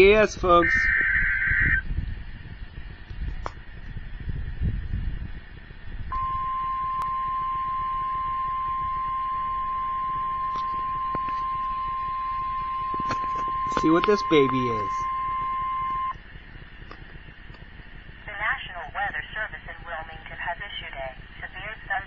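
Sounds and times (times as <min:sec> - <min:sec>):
warbling data tones: 0:00.0 - 0:01.9, 0:06.1 - 0:16.2
low background rumble: 0:00.0 - 0:22.0
steady single-pitched alarm tone: 0:06.1 - 0:16.2.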